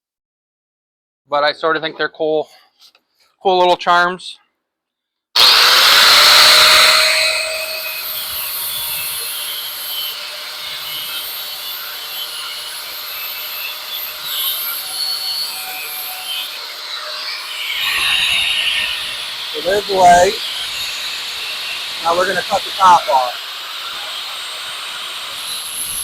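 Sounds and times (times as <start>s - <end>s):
power tool grinding metal: 5.4s - 26.0s.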